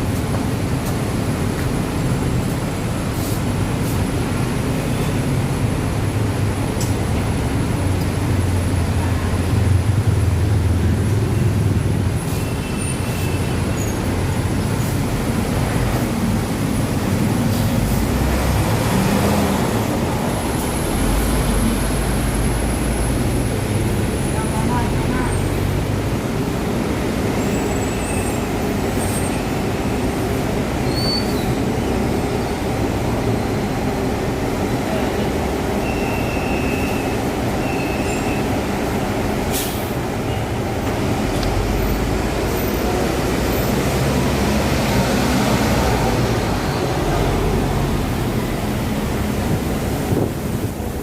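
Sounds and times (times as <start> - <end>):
bus engine drone: 0.0 - 51.0
street traffic: 0.0 - 51.0
faint high squeal: 30.9 - 31.5.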